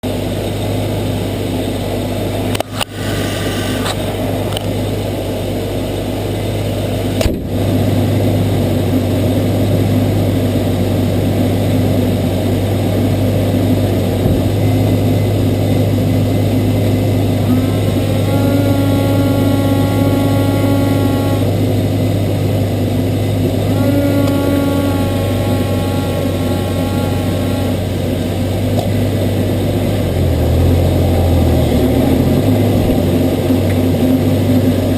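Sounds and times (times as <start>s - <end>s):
engine running: 0.0s - 34.9s
turbo whistling: 16.9s - 28.8s.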